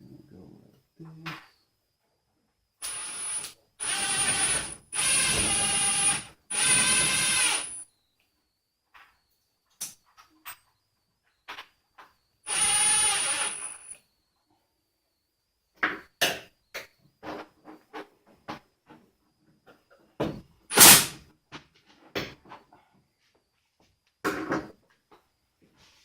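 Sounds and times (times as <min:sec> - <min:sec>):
electric screwdriver driving screw: 0:02.8 - 0:07.8, 0:12.5 - 0:14.0, 0:20.7 - 0:21.2.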